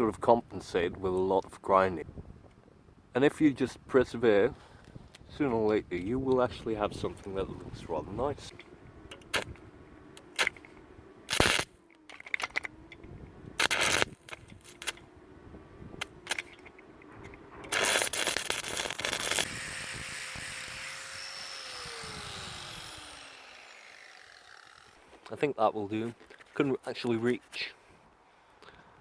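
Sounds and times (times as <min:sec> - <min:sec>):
angle grinder grinding steel: 0:11.3 - 0:12.7, 0:13.6 - 0:15.0, 0:17.7 - 0:25.3.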